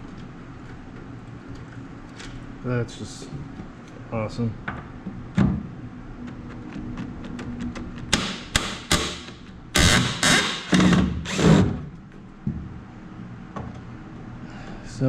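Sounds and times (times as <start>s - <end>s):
power drill running in bursts: 9.8s - 11.7s.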